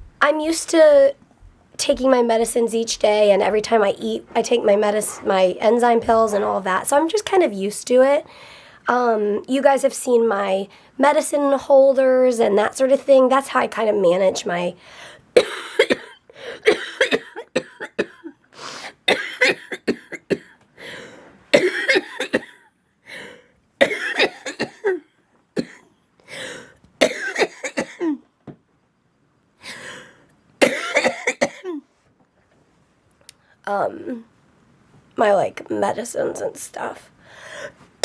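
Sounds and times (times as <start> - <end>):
woman coughing: 15.4 - 20.6, 21.5 - 22.7, 23.8 - 25.8, 26.4 - 28.2, 30.6 - 31.8.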